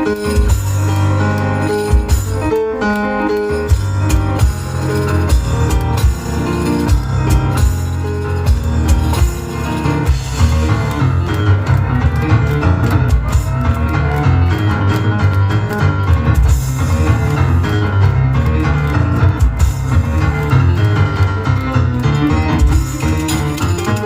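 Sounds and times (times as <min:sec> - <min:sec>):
piano: 0:00.0 - 0:24.0
cajon percussion strikes: 0:15.7 - 0:24.0.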